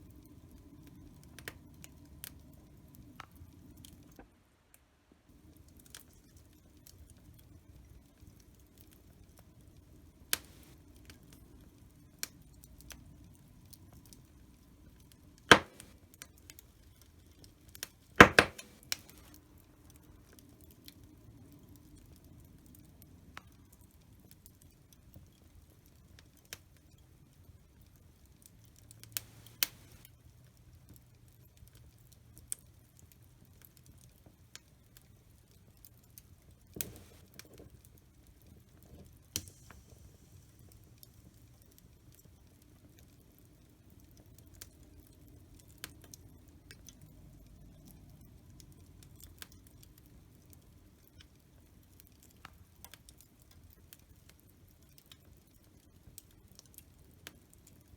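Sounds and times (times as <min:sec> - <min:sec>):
wood fire crackling: 0:00.0 - 0:04.2, 0:05.3 - 0:57.9.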